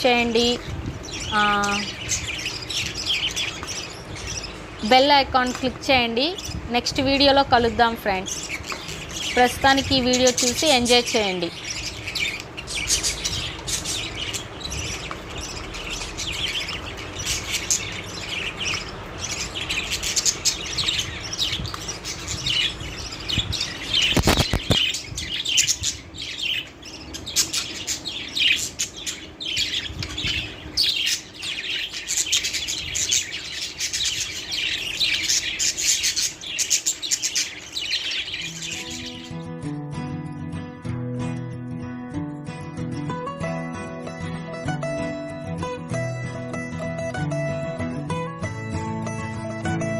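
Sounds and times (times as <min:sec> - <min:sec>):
budgerigars chattering: 0:00.1 - 0:39.4.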